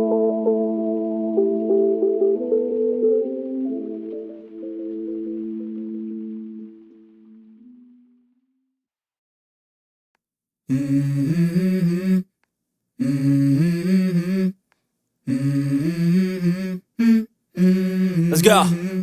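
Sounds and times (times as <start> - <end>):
person humming a slow melody: 10.7 - 12.2, 13.0 - 14.6, 15.3 - 19.0.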